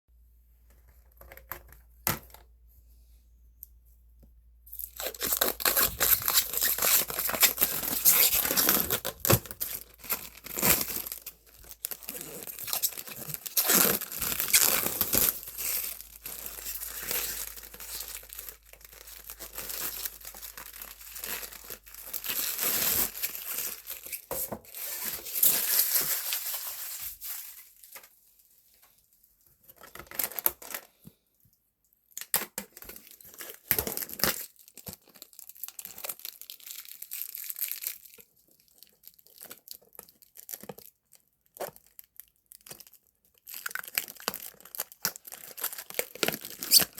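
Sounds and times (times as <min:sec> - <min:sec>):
plastic film being peeled off: 0:04.9 - 0:28.1, 0:44.2 - 0:46.9.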